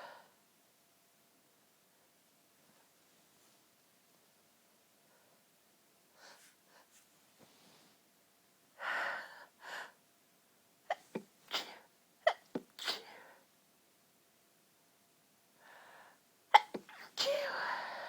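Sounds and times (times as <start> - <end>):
woman's stifled sneezes: 10.9 - 13.2, 16.6 - 17.9
woman's breathy gasps: 17.2 - 18.0.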